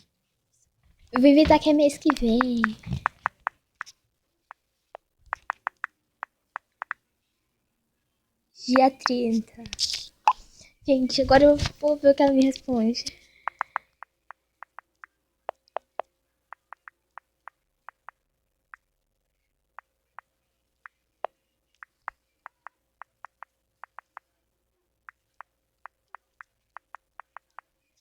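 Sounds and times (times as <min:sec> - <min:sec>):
faint steady hum: 0:00.0 - 0:28.0
phone keyboard taps: 0:01.2 - 0:03.9, 0:05.3 - 0:05.9, 0:06.6 - 0:07.0, 0:13.5 - 0:14.8, 0:15.5 - 0:17.3, 0:25.1 - 0:27.6.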